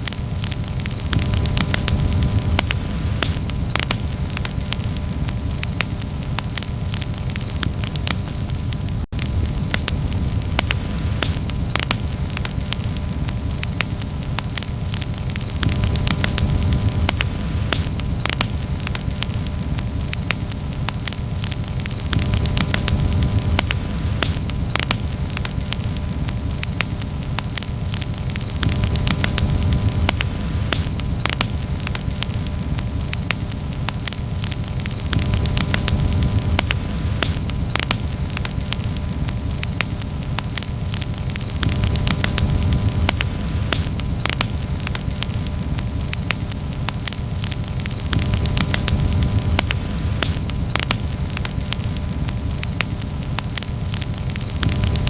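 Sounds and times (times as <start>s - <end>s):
campfire crackling: 0.0s - 55.0s
sharp pops and snaps: 0.0s - 55.0s.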